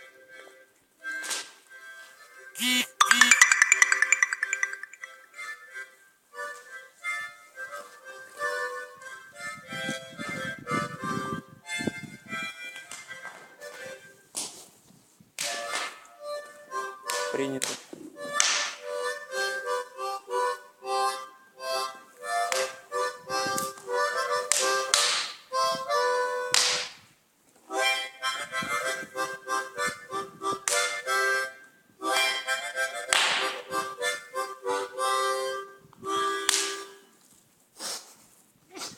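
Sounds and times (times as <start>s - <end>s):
harmonica playing: 2.6s - 4.9s, 27.8s - 36.4s.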